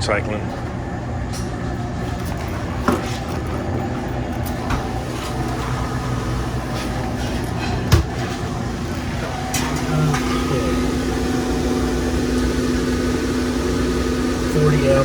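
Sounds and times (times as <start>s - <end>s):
refrigeration compressor humming: 0.0s - 15.0s.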